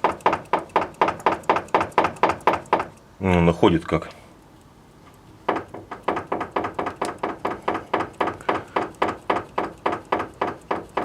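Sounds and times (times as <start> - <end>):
steering rack knocking: 5.5 - 11.0.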